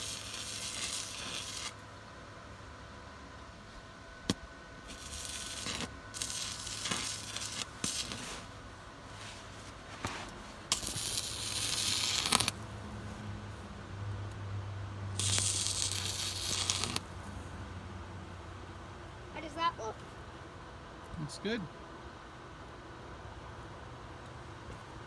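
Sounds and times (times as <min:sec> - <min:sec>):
welding arc crackling: 0:00.0 - 0:01.9, 0:04.3 - 0:13.7, 0:15.0 - 0:19.9.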